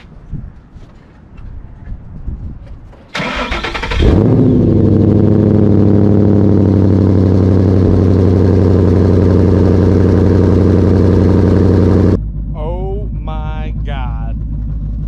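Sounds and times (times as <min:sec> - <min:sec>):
car engine idling: 0:03.2 - 0:15.0.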